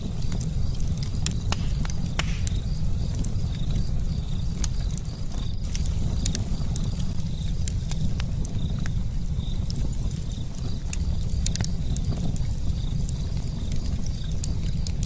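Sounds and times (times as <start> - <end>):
fire crackling and popping: 0.0 - 15.0.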